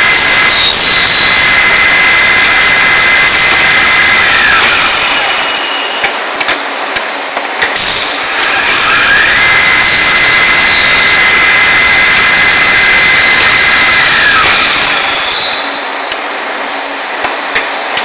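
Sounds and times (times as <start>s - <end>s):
high whine: 0.0s - 18.0s
lathe machining: 0.0s - 18.0s.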